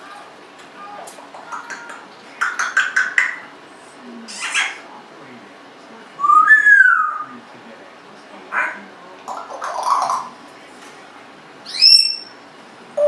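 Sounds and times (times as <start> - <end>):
parrot whistle: 6.2 - 7.3, 11.7 - 12.4.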